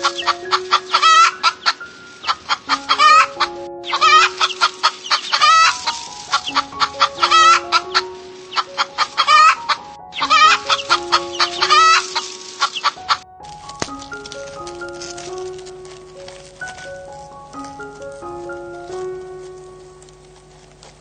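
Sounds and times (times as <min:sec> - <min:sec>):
chickens clucking and cackling: 0:00.0 - 0:13.2
music with held notes: 0:00.0 - 0:21.0.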